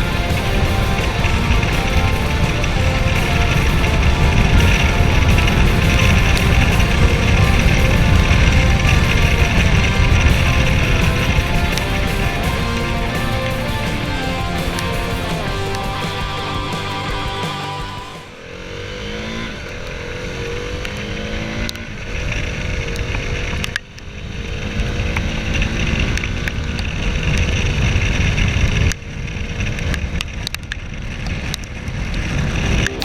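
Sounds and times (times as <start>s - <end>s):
motorcycle engine accelerating: 0.0s - 23.5s.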